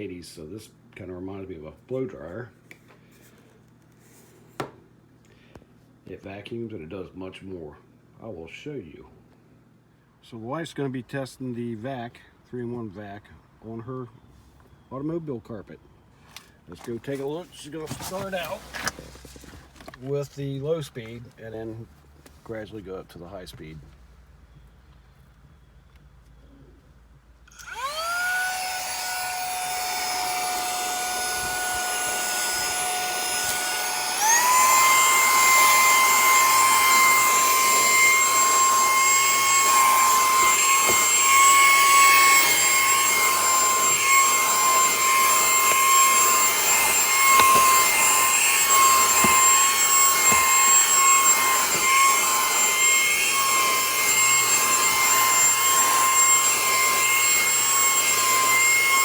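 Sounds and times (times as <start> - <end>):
handheld vacuum motor whine: 27.5 - 59.0.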